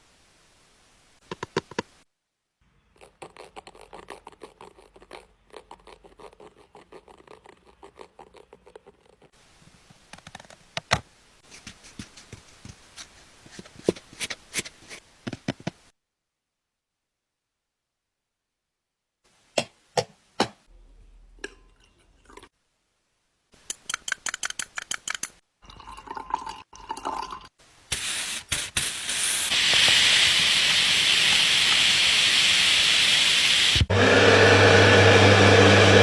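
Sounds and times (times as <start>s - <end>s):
spray hissing: 27.9s - 33.9s.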